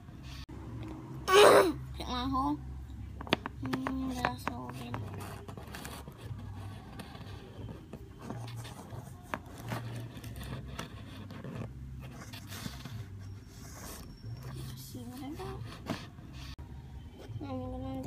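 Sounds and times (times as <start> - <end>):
scraping and rustling: 3.2 - 16.6.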